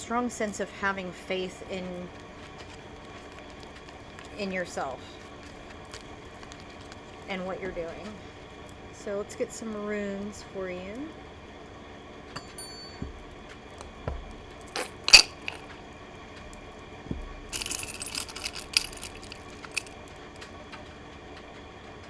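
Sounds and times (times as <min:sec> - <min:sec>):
stones clicking and rattling: 0:14.7 - 0:15.6, 0:17.6 - 0:20.0.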